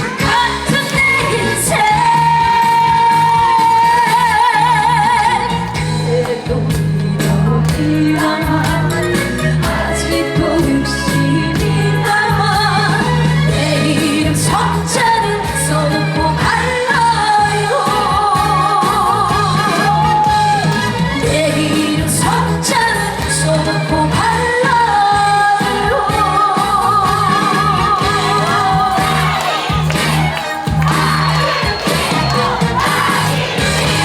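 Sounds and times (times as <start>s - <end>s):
amplified backing track: 0.0s - 34.0s
person singing with vibrato: 0.0s - 34.0s.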